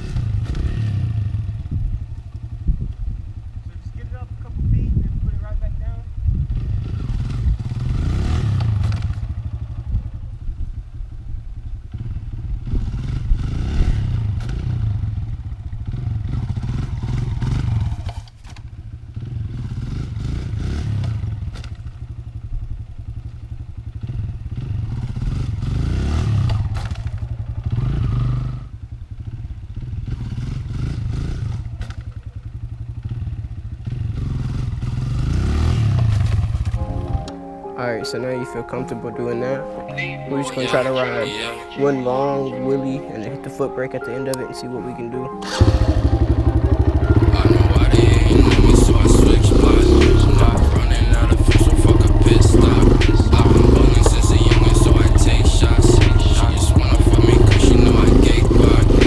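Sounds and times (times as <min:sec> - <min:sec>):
dirt bike engine revving: 0:00.0 - 0:04.7, 0:06.2 - 0:10.8, 0:11.9 - 0:18.3, 0:18.9 - 0:22.4, 0:23.1 - 0:37.1, 0:45.4 - 0:59.0.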